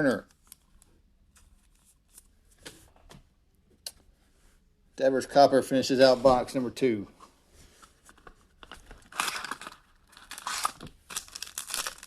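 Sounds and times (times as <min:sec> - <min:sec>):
packaging being torn and crinkled: 0:08.6 - 0:12.0.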